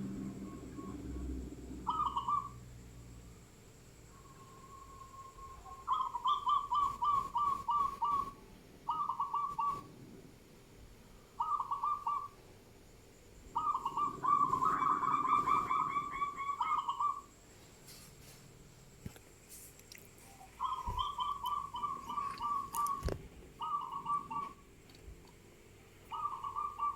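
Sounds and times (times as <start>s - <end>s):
bird singing whistled notes: 0.3s - 1.2s, 4.1s - 9.9s, 13.6s - 17.2s, 20.6s - 24.6s, 26.1s - 26.9s.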